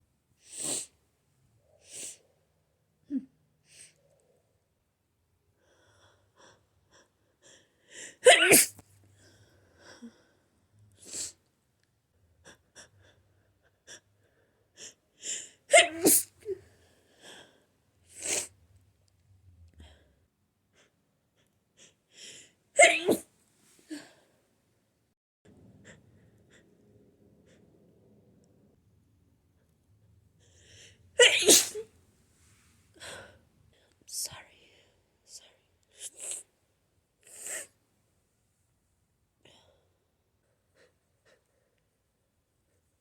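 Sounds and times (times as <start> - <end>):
person sneezing: 8.2 - 8.8, 15.7 - 16.6, 22.8 - 23.3, 31.2 - 31.8.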